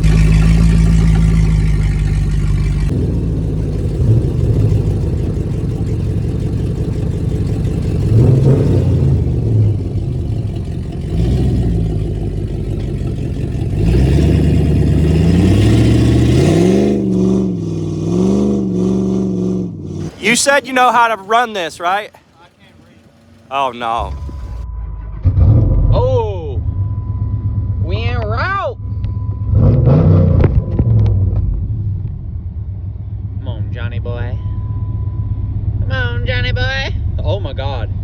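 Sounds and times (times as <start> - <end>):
car engine revving: 0.0 - 21.2.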